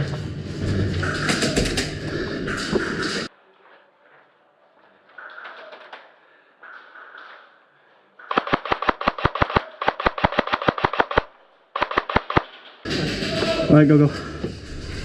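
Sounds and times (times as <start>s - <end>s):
airsoft gun firing: 8.3s - 12.6s.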